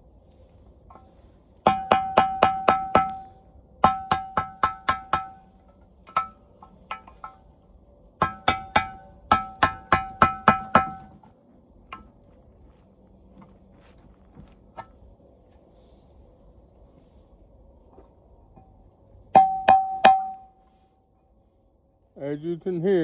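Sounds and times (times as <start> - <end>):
metal strikes on steel plate ringing: 1.7 - 5.5, 6.1 - 7.4, 8.2 - 11.1, 19.4 - 20.6.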